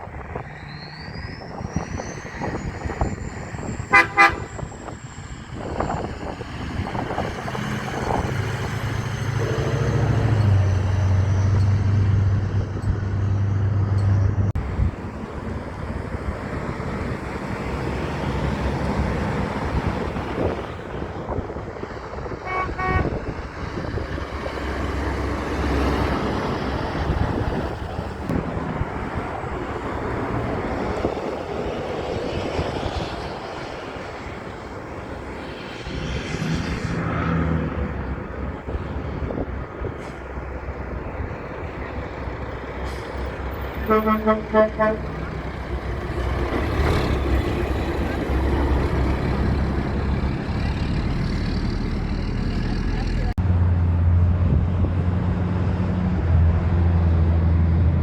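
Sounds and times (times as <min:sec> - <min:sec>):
road traffic passing: 0:00.0 - 0:58.0
truck air horn blast: 0:03.8 - 0:04.8, 0:22.4 - 0:23.4, 0:43.7 - 0:45.4.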